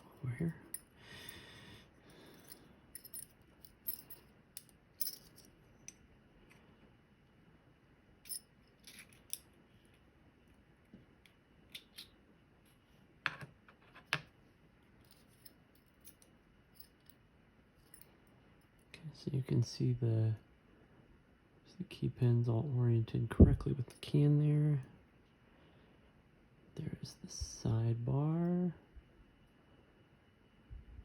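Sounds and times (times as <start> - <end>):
metallic clicks of lock parts: 8.2 - 9.5, 11.7 - 12.2.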